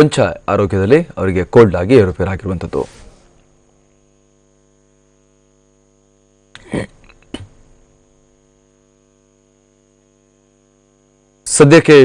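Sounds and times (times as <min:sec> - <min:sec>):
electrical mains hum: 0:00.0 - 0:12.0
loud burst of noise: 0:02.6 - 0:04.3.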